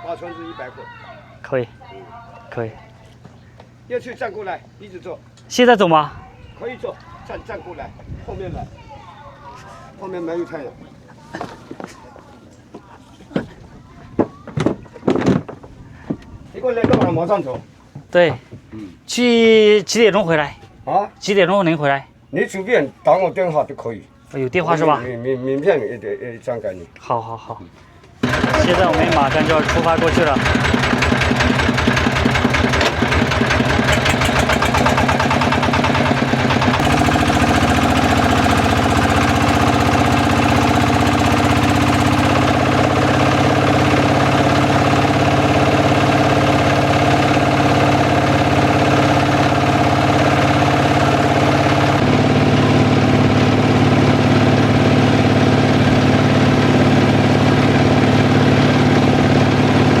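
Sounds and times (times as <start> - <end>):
small boat engine running: 28.2 - 60.0.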